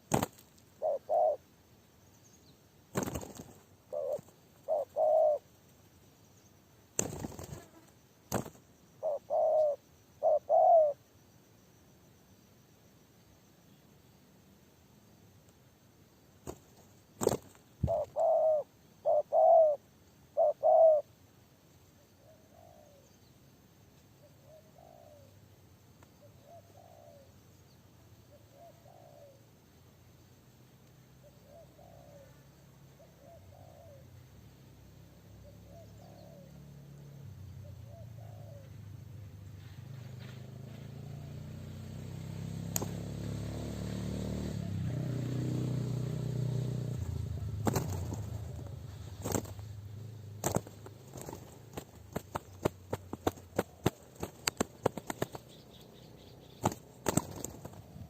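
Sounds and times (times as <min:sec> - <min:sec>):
dove cooing: 0:00.0 - 0:01.4, 0:03.0 - 0:05.5, 0:08.3 - 0:11.0, 0:17.2 - 0:21.1, 0:22.2 - 0:23.1, 0:24.2 - 0:25.3, 0:26.2 - 0:27.3, 0:28.4 - 0:29.4, 0:31.2 - 0:32.4, 0:33.0 - 0:34.1, 0:35.4 - 0:36.6, 0:37.6 - 0:38.7, 0:46.9 - 0:49.7, 0:50.4 - 0:55.8, 0:56.4 - 0:58.0
motor engine hum: 0:46.7 - 0:58.0.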